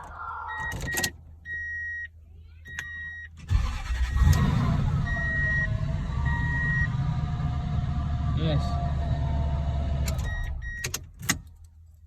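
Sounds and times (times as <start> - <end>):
dashboard warning chime beeping: 0.5 - 7.2, 10.1 - 11.0
ignition click: 0.6 - 1.2, 2.7 - 7.0, 10.0 - 11.6
truck engine starting and idling: 3.3 - 11.6.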